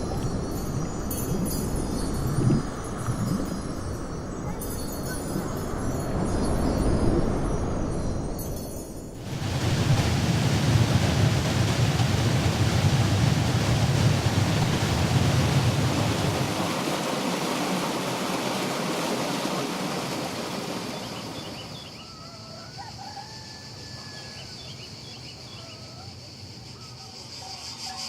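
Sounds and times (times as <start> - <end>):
steady rushing noise: 5.2 - 21.8.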